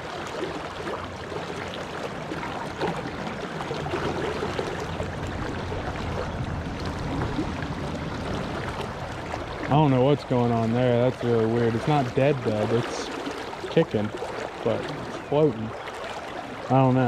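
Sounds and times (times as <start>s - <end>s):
stream water splashing: 0.0s - 17.0s
low rumble: 4.6s - 9.8s.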